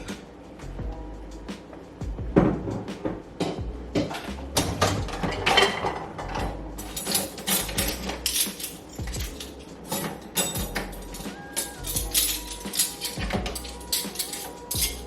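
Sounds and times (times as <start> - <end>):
dishes and cutlery clattering: 2.4 - 15.0.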